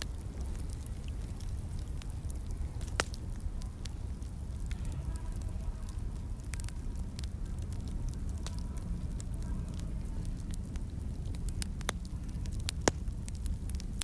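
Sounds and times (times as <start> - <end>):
fire crackling and popping: 0.0 - 14.0.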